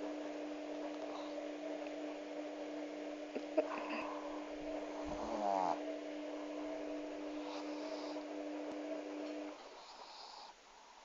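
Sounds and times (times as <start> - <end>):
dog snoring: 3.6 - 6.0, 7.2 - 8.4, 9.5 - 10.6
breathy hiss of air: 7.3 - 8.4, 9.5 - 11.0.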